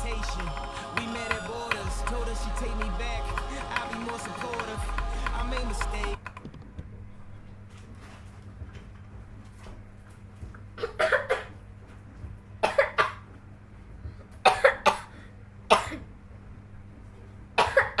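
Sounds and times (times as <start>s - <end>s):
person coughing hard: 10.8s - 11.5s.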